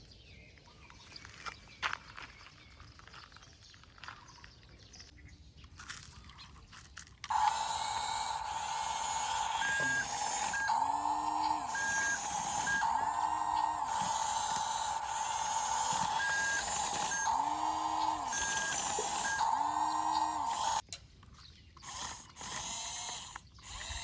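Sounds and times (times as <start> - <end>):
toy electric motor whining: 7.2 - 20.8, 21.8 - 24.0
short high beeps: 7.3 - 20.8.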